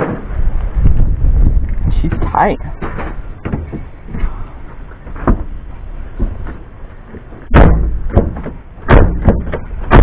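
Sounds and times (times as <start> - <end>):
truck door shutting heavily: 7.5 - 10.0.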